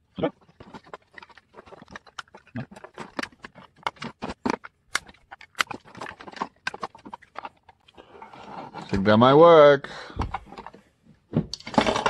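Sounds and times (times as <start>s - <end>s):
plastic clicking and cracking: 0.6s - 8.0s.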